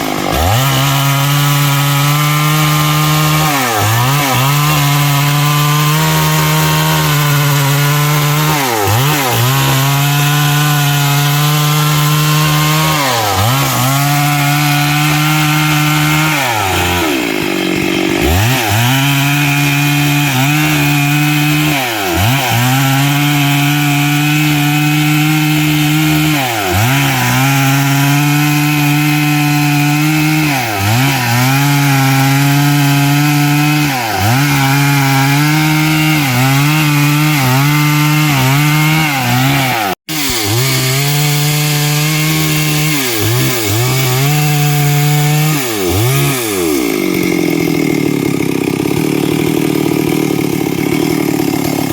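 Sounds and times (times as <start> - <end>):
chainsaw cutting through wood: 0.0 - 51.9.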